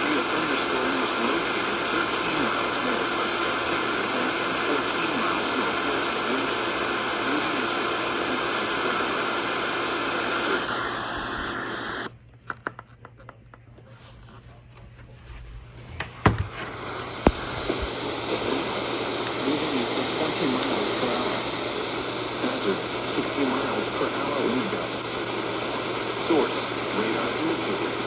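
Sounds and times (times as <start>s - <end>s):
faint voice: 0.0s - 12.1s, 16.7s - 28.0s
radio static hiss: 0.0s - 12.2s, 13.7s - 28.0s.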